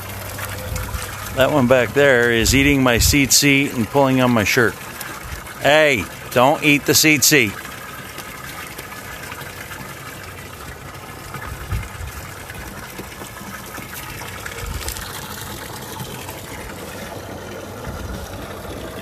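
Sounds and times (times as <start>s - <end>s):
water running from hose: 0.0s - 19.0s.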